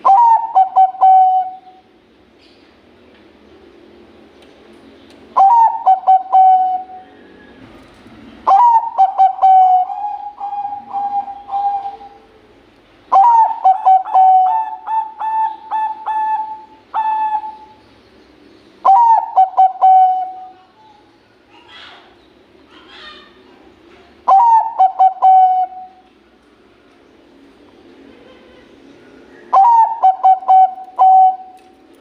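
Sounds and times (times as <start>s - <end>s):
dove cooing: 0.0s - 1.9s, 5.4s - 12.5s, 13.1s - 17.8s, 18.8s - 20.8s, 24.2s - 26.0s, 28.1s - 31.7s.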